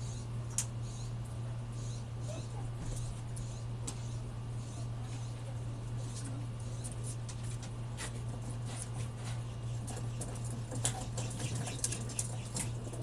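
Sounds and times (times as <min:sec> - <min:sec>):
steady low hum: 0:00.0 - 0:13.0
pigeons scratching and tapping: 0:06.0 - 0:13.0.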